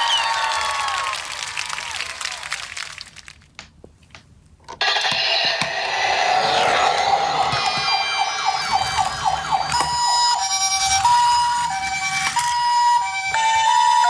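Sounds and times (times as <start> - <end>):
toy ambulance siren: 4.8 - 14.0.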